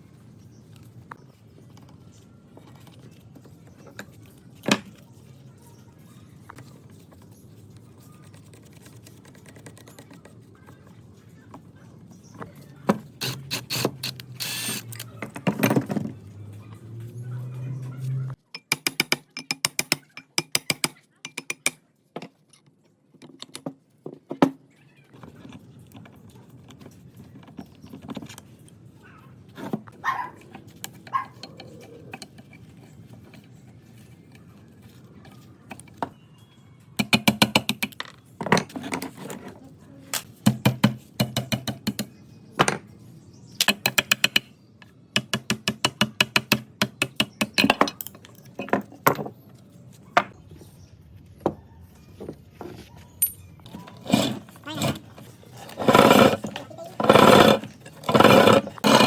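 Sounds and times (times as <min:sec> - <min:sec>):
metal tools clattering: 0:53.2 - 0:59.0.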